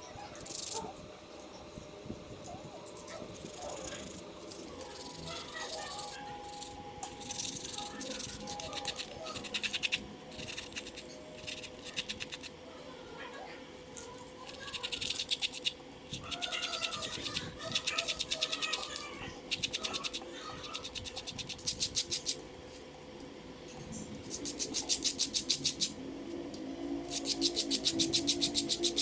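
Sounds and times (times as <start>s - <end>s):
fast rhythmic scraping: 3.1s - 12.6s, 14.4s - 22.4s, 24.2s - 26.0s, 27.1s - 29.0s.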